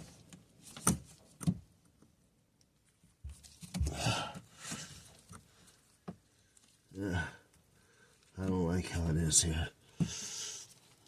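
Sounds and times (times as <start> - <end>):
rustling and scraping of a part: 0.0 - 2.0, 2.7 - 3.9, 4.5 - 6.9.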